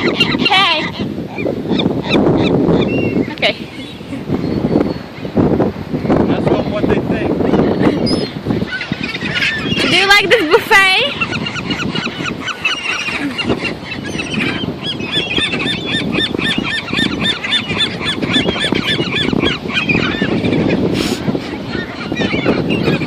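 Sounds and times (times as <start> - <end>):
seagulls calling: 0.0 - 23.0.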